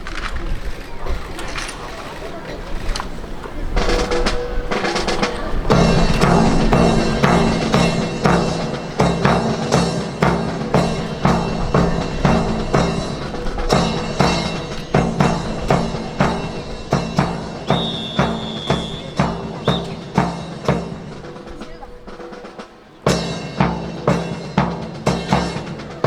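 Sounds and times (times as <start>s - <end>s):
drums beating marching rhythm: 1.6s - 26.0s
held low musical tone: 3.2s - 26.0s
high whistle-like tone: 17.4s - 20.3s.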